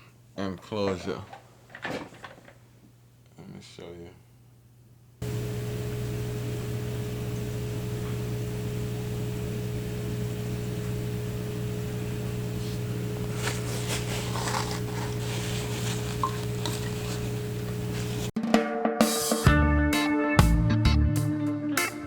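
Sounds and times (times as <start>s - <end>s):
low electrical hum: 0.0s - 18.3s
faint scraping and clicking: 12.3s - 18.3s
plucked guitar music: 18.6s - 22.0s.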